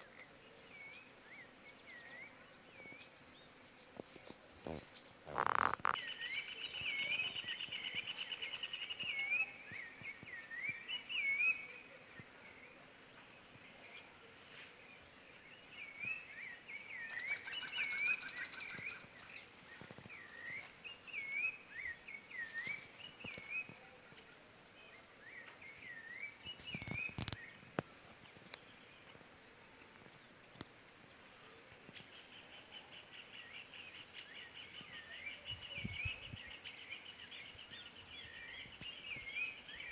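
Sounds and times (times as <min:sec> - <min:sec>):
high insect drone: 0:00.0 - 0:39.9.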